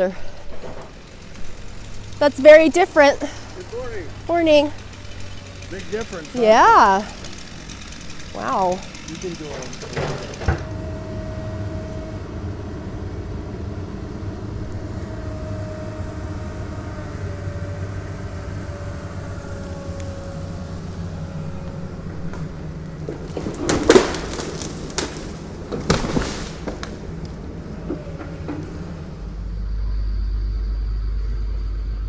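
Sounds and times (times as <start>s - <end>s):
heavy machinery engine drone: 0.0s - 32.0s
loud knocks and clunks: 8.9s - 11.0s, 22.0s - 29.1s
faint wavering whine: 29.1s - 32.0s.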